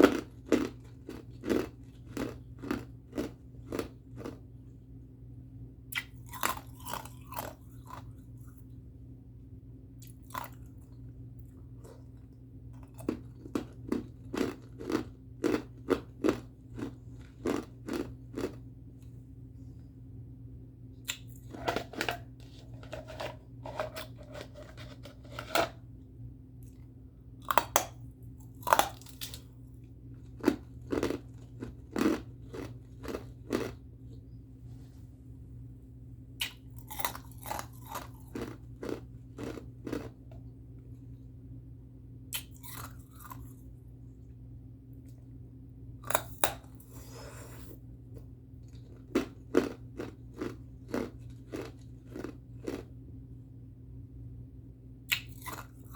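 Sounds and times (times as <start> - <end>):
ice being chewed: 0.0 - 4.4, 5.9 - 8.7, 10.0 - 18.6, 21.1 - 25.8, 27.4 - 33.8, 36.4 - 40.4, 42.3 - 43.6, 46.0 - 52.9, 55.1 - 55.9
steady low hum: 0.0 - 55.9.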